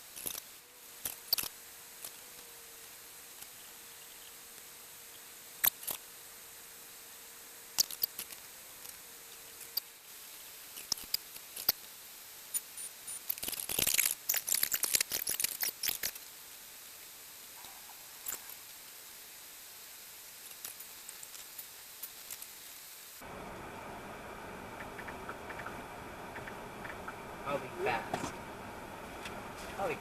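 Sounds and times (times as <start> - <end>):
faint steady hiss: 0.0 - 30.0
rustling: 23.2 - 30.0.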